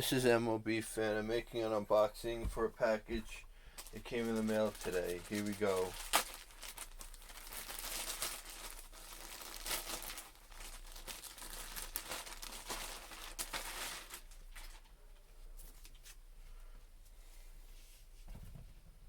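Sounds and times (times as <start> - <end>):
packaging crinkling and tearing: 3.8 - 14.9.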